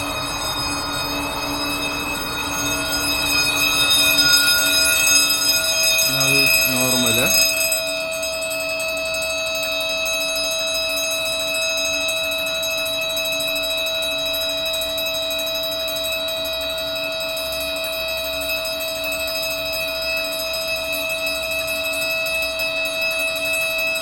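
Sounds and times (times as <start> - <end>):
continuous electronic alarm tone: 0.0 - 8.4.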